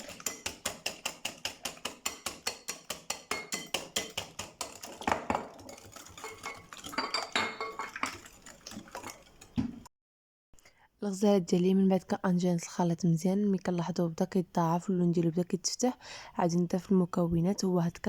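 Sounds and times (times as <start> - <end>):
whisk clinking against bowl: 0.0 - 9.5.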